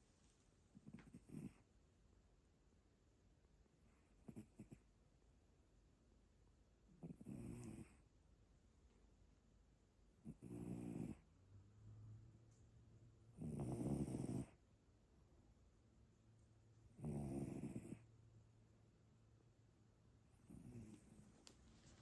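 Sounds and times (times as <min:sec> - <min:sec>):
cat snoring: 0:00.8 - 0:01.6, 0:04.0 - 0:04.8, 0:06.9 - 0:08.0, 0:10.2 - 0:11.2, 0:13.4 - 0:14.6, 0:17.0 - 0:18.1, 0:20.4 - 0:21.2.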